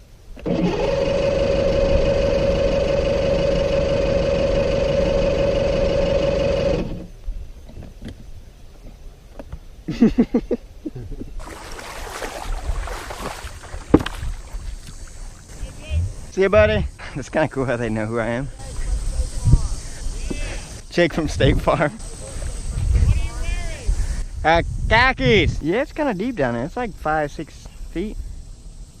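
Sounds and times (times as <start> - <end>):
small motor whirring: 0.4 - 7.1.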